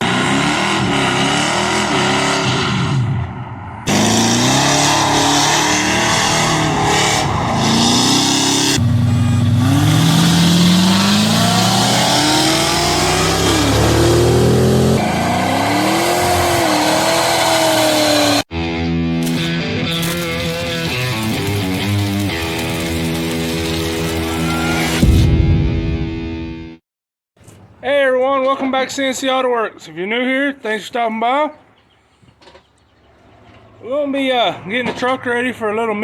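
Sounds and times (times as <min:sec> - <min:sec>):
pickup engine accelerating hard: 0:00.0 - 0:18.5.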